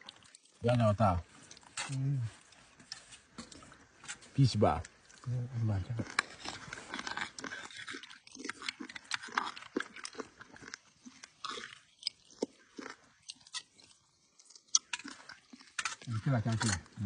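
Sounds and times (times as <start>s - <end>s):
chewing and lip smacking: 0.0s - 0.6s, 4.8s - 17.0s.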